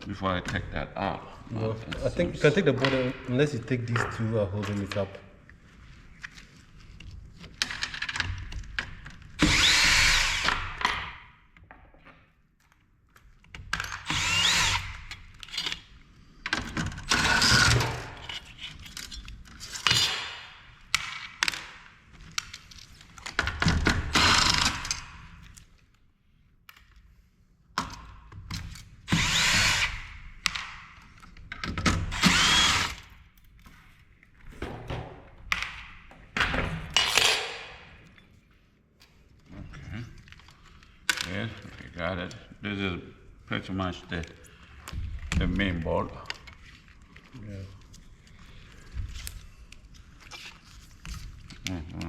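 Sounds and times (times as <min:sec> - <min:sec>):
cordless drill whining: 0:09.4 - 0:10.8, 0:14.0 - 0:15.2, 0:17.1 - 0:18.0, 0:24.1 - 0:25.0, 0:29.1 - 0:30.2, 0:32.0 - 0:33.1.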